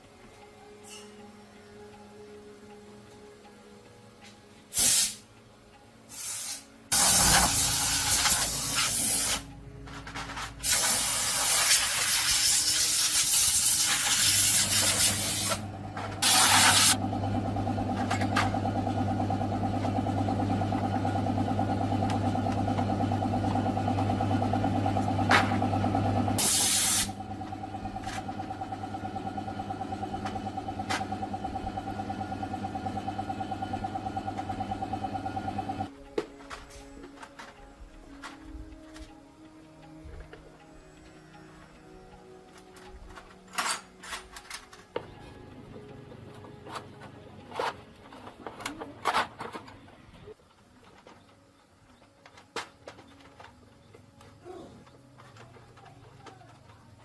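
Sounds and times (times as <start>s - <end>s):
hissing spray: 4.8s - 5.2s, 6.1s - 9.5s, 10.6s - 15.6s, 16.2s - 17.0s, 26.4s - 27.2s
pulsing machine hum: 6.9s - 36.0s.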